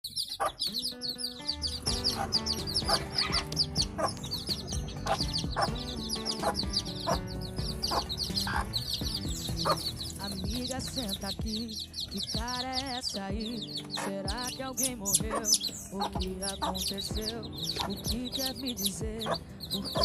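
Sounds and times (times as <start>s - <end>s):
birds chirping and peeping: 0.0s - 20.0s
instrumental music with steady beat: 0.8s - 16.4s.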